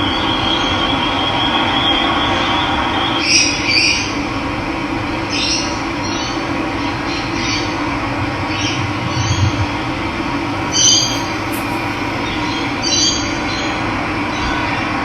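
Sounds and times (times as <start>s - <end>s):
running water: 10.6s - 12.8s
birds calling: 10.6s - 13.0s.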